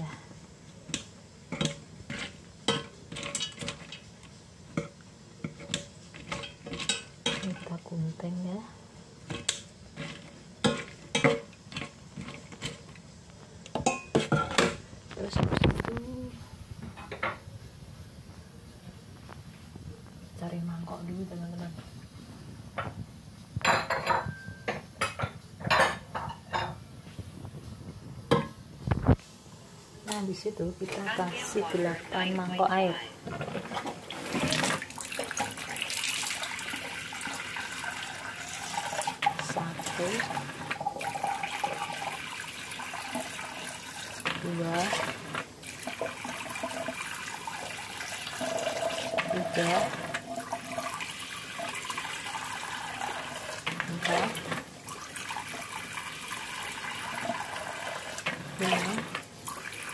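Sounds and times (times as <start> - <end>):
dishes clinking and clattering: 0.9 - 4.1, 4.7 - 7.7, 9.3 - 13.0, 13.7 - 14.8, 23.6 - 26.9, 28.3 - 28.6, 47.7 - 51.0.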